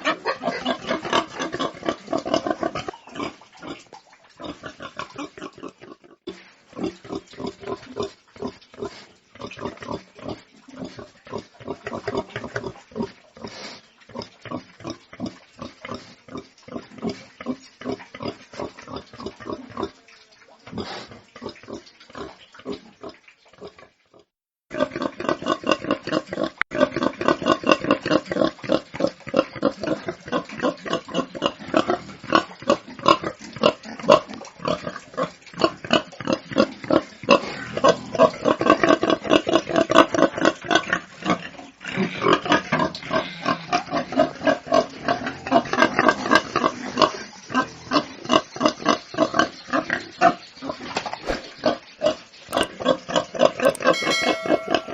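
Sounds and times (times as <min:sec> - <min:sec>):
pigs grunting: 0:00.0 - 0:19.9, 0:20.7 - 0:54.9.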